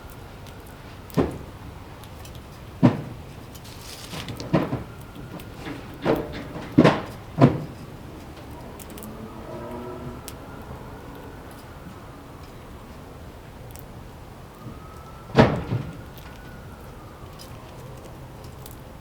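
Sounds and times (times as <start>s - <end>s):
hollow knocks: 4.1s - 7.8s.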